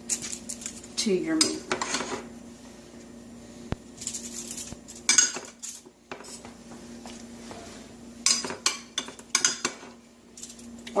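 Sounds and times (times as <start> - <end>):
steady low hum: 0.0 - 11.0
dishes clattering: 5.1 - 6.3, 8.2 - 10.0.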